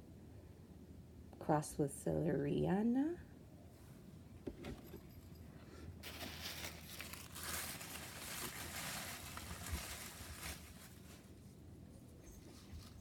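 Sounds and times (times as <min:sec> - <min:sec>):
packaging crinkling: 0:06.0 - 0:11.3.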